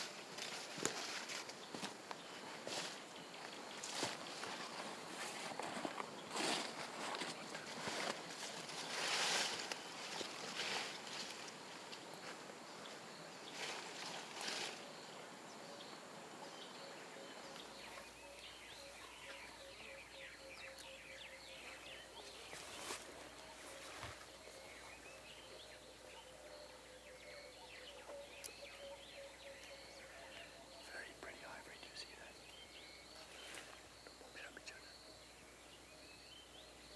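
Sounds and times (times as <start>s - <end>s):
small birds chirping: 0.0s - 36.9s
rustling: 3.8s - 11.6s, 22.3s - 24.6s.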